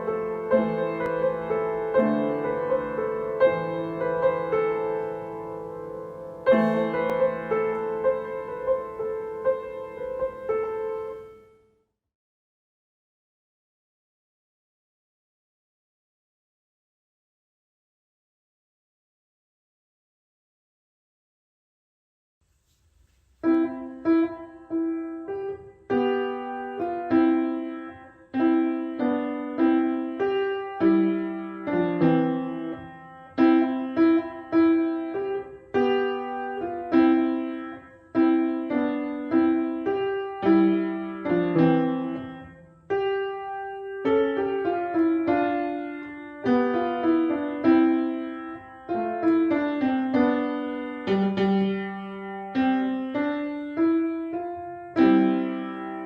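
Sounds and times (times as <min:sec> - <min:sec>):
solo piano piece: 0:00.0 - 0:11.9, 0:23.4 - 0:56.0.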